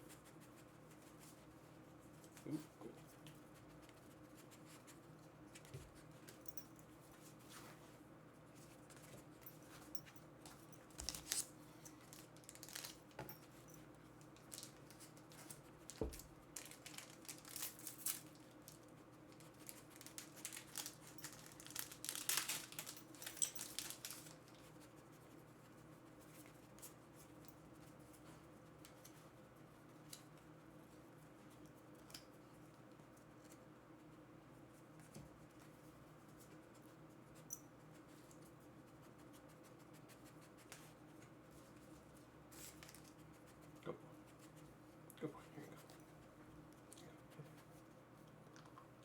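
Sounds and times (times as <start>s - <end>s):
foil wrappers tearing and crinkling: 12.1s - 13.0s, 16.6s - 18.2s, 19.7s - 24.4s.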